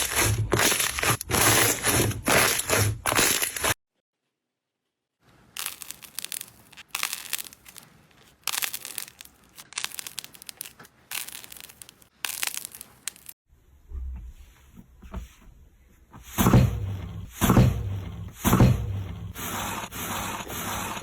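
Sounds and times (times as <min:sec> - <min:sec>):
slime crackling and crunching: 0:00.0 - 0:03.8, 0:05.6 - 0:13.4.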